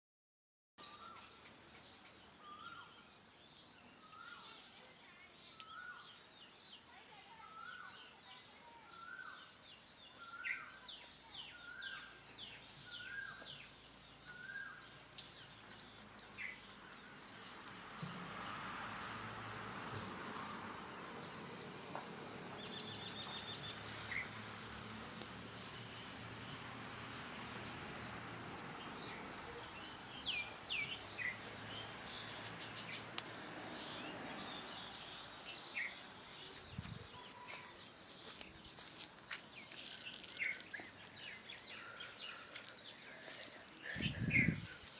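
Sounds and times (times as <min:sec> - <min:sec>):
birds chirping and calling: 0:39.7 - 0:44.9.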